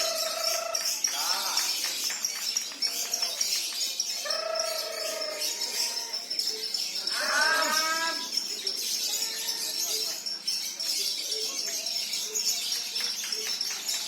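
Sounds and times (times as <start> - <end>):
drawn-out bird calls: 0.0 - 10.4
lovebirds chattering and trilling: 0.0 - 14.0.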